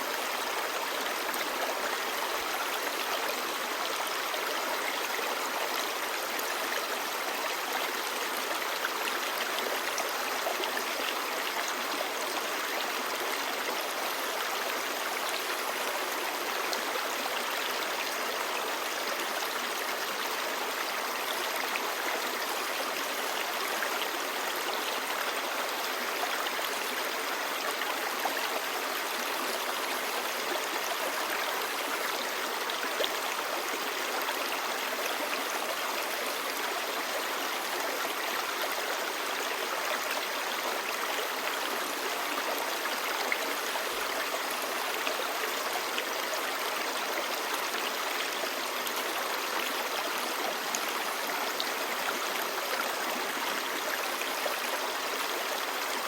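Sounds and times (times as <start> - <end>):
stream babbling: 0.0 - 56.0.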